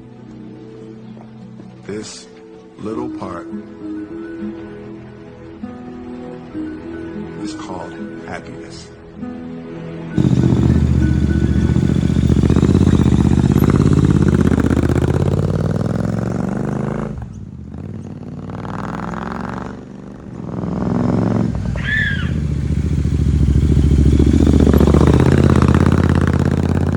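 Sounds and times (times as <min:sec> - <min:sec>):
motorcycle engine revving: 0:10.2 - 0:26.9.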